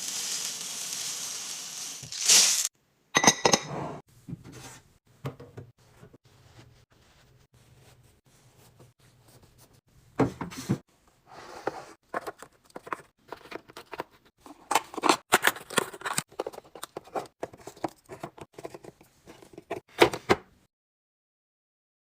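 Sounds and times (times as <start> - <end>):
packaging rustling: 2.0 - 2.7.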